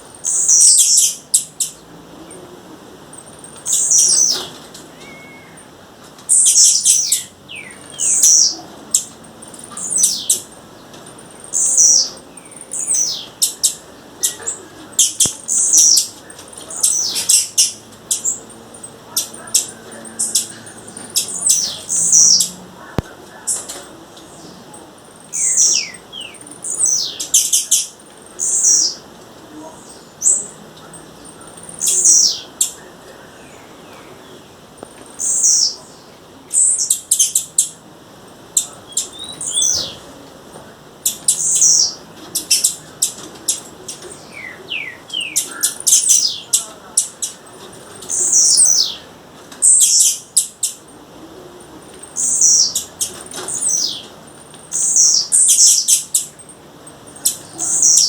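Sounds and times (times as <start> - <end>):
bird calling high thin notes: 3.2 - 29.1.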